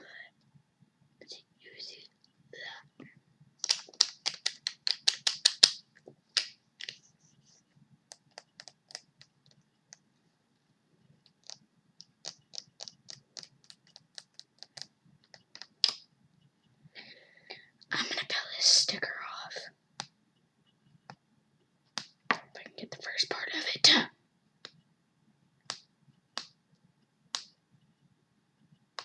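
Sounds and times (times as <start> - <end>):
quick sharp tapping clicks: 3.6 - 5.8, 11.3 - 16.0.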